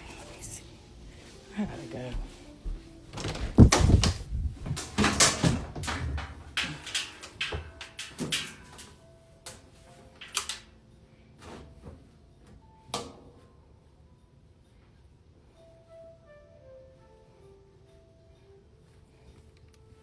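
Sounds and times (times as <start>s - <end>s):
knocks bumps and clatters: 3.1s - 8.9s.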